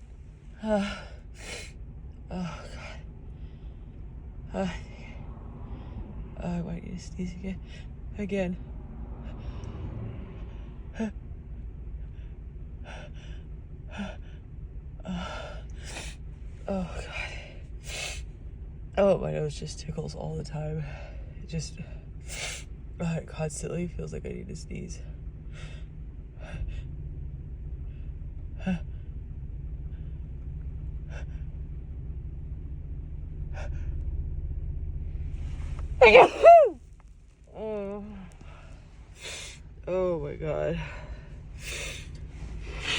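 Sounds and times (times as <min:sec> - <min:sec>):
steady low hum: 0:00.0 - 0:42.9
woman gasping before sneeze: 0:36.0 - 0:36.7.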